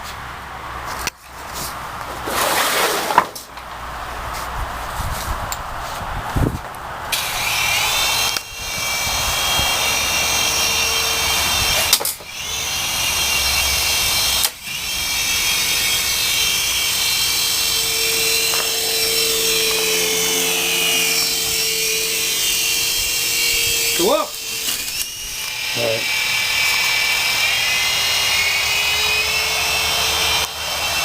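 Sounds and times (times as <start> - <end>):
toy helicopter rotors whining: 7.1 - 31.0.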